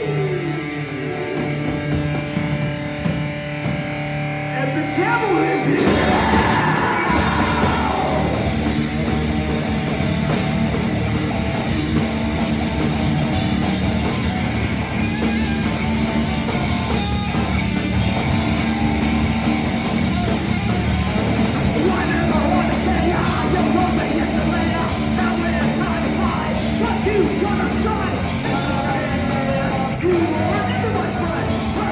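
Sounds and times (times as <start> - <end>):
electric guitars: 0.0 - 31.9
rock band playing: 0.0 - 31.9
person shouting vocals: 4.7 - 8.6.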